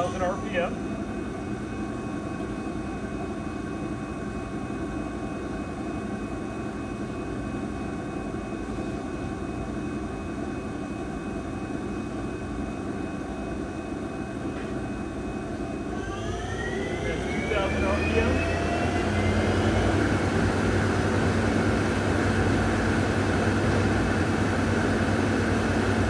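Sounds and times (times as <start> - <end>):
lathe spindle whining: 15.9 - 26.0.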